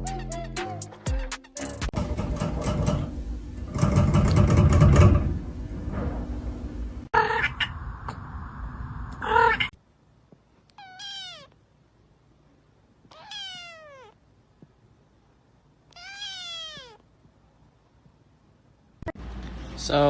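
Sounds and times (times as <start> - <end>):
cat meowing: 10.7 - 11.6, 13.0 - 14.2, 15.9 - 17.1.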